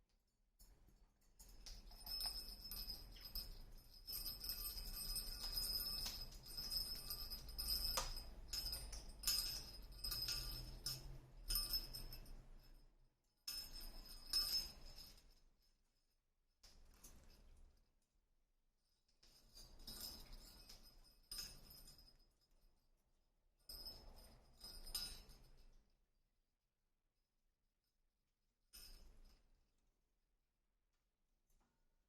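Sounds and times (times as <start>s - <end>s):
small bell jingling: 1.4s - 12.9s, 13.5s - 15.4s.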